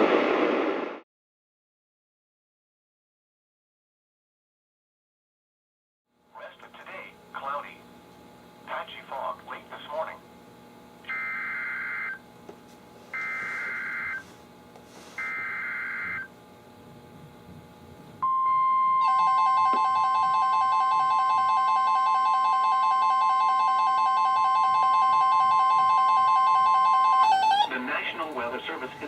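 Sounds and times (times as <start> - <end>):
rapidly pulsing electronic alarm: 11.0 - 12.2, 13.2 - 14.3, 15.2 - 16.3, 18.2 - 29.0
steady warning alarm tone: 11.0 - 12.3, 13.1 - 14.4, 15.2 - 16.4, 18.2 - 29.0.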